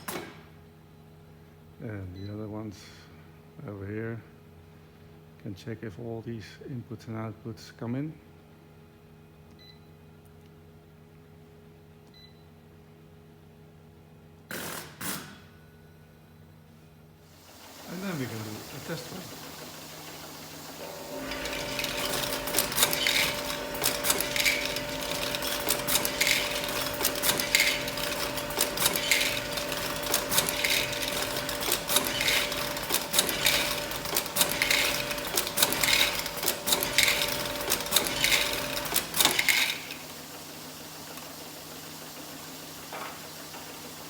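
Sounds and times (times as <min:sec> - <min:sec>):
vibrating feed channels humming: 0:17.3 - 0:44.0.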